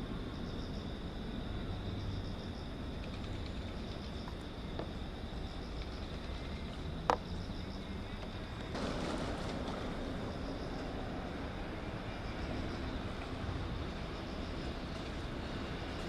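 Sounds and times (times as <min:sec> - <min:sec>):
insects chirring: 0:00.0 - 0:16.0.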